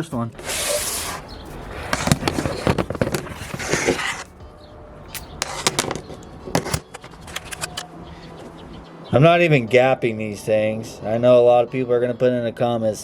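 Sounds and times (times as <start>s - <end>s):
metal tools clicking and clinking: 5.2s - 7.9s.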